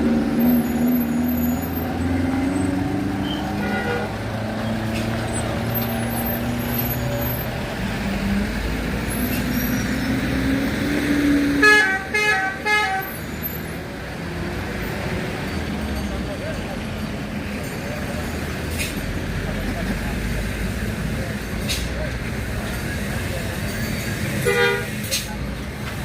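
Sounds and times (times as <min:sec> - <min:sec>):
vehicle engines running: 0:00.0 - 0:26.0
vehicle horn toots: 0:03.2 - 0:04.2, 0:11.6 - 0:13.2, 0:24.4 - 0:25.0.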